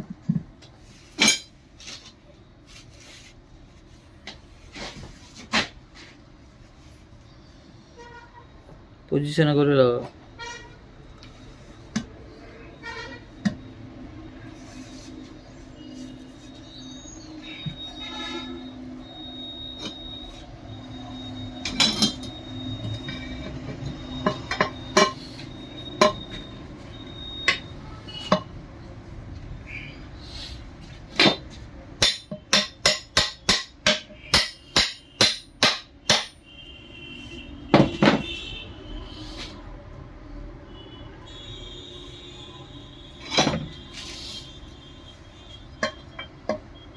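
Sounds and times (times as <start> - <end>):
hammer knocking on metal parts: 21.6 - 25.2, 26.0 - 26.3, 31.1 - 36.5, 37.7 - 38.3, 45.8 - 46.7.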